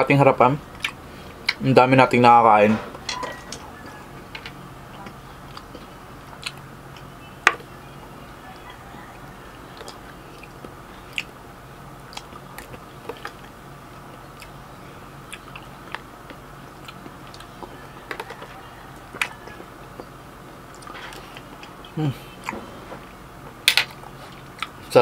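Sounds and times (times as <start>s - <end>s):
person chewing and biting food: 0.7s - 1.6s, 4.9s - 7.1s, 9.7s - 11.4s, 12.1s - 14.6s, 15.3s - 22.6s.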